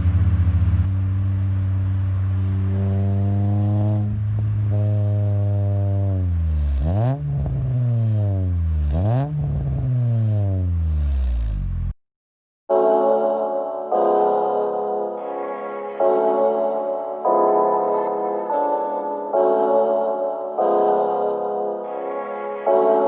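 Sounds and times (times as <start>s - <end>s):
car exhaust revving: 0.0s - 11.9s.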